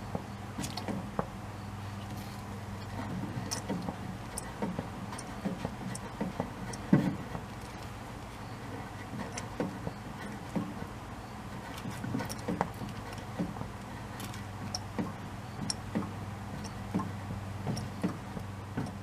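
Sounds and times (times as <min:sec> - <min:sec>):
car engine humming: 0:00.0 - 0:19.0
ticks and knocks: 0:02.8 - 0:07.7, 0:08.7 - 0:10.9, 0:11.6 - 0:19.0.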